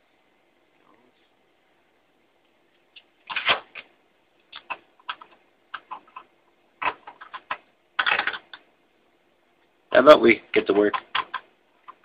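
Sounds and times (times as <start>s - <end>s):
computer hardware clicking: 2.9s - 8.6s, 10.6s - 12.0s.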